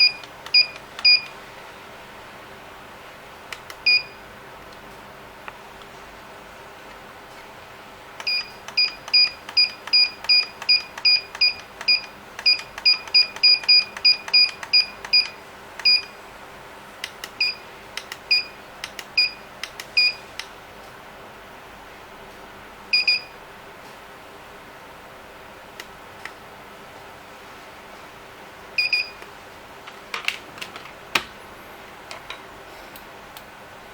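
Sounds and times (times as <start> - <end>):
keypad beeps: 0.0 - 1.3, 3.8 - 4.2, 8.2 - 16.2, 17.4 - 17.7, 18.3 - 18.6, 19.2 - 19.4, 20.0 - 20.2, 22.9 - 23.4, 28.8 - 29.2
key clicks: 8.2 - 16.0.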